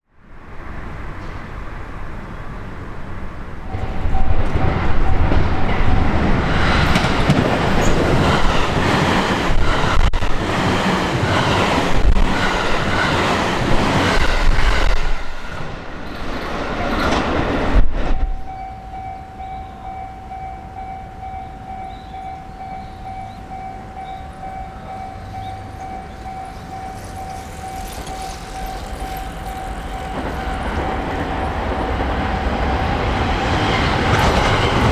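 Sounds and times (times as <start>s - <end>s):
crossing warning bell ringing: 3.7s - 6.2s, 18.2s - 34.9s
train wheels clattering: 3.8s - 19.1s, 21.8s - 34.9s.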